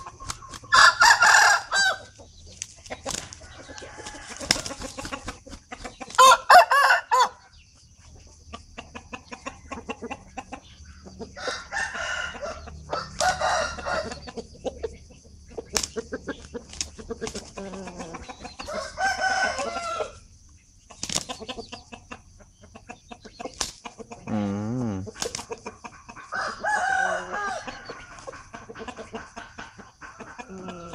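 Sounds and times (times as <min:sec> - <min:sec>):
loud wavering chicken call: 0:00.0 - 0:02.2, 0:06.2 - 0:07.5
chickens clucking: 0:00.0 - 0:30.9.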